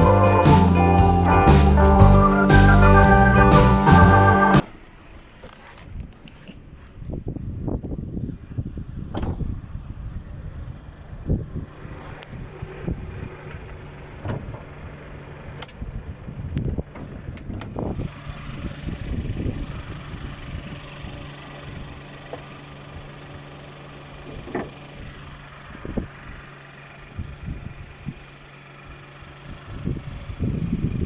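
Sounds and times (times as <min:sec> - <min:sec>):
car engine starting and idling: 0:00.0 - 0:04.6.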